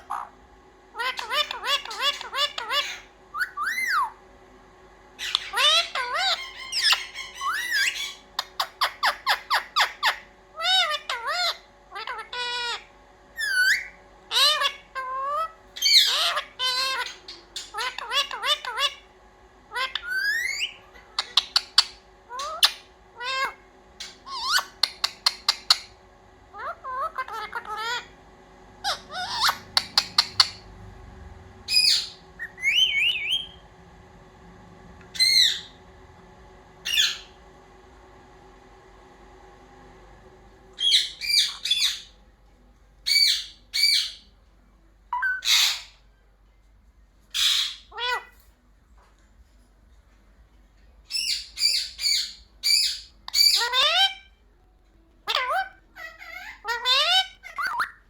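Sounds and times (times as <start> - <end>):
parakeet squawking: 0.0 - 0.4, 1.0 - 4.2, 5.2 - 28.2, 28.8 - 33.7, 35.1 - 35.9, 36.8 - 37.4, 40.7 - 42.2, 43.0 - 44.4, 45.1 - 46.0, 47.3 - 48.4, 51.1 - 54.4, 55.2 - 58.0
parrot chirps: 1.0 - 4.2, 5.2 - 19.1, 19.7 - 28.1, 28.8 - 30.8, 31.7 - 33.6, 35.1 - 35.8, 36.8 - 37.4, 40.8 - 42.2, 43.0 - 44.4, 45.1 - 46.0, 47.3 - 48.4, 51.0 - 54.4, 55.2 - 58.0
parrot whistled calls: 1.0 - 4.2, 5.2 - 12.8, 13.4 - 19.1, 19.7 - 25.9, 28.8 - 30.7, 31.7 - 33.6, 35.1 - 35.8, 36.8 - 37.4, 40.7 - 42.2, 43.0 - 44.4, 45.1 - 46.0, 47.3 - 48.4, 51.1 - 54.4, 55.2 - 58.0.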